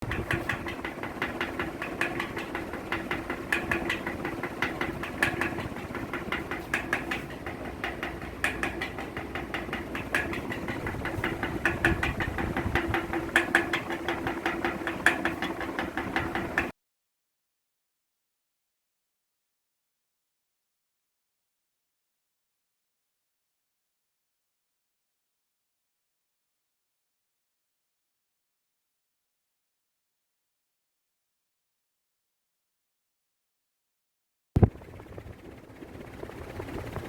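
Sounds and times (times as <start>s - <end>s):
ceiling fan humming: 0.0s - 16.7s, 34.6s - 37.0s
fan squeaking and rattling: 0.0s - 16.7s, 34.6s - 37.0s.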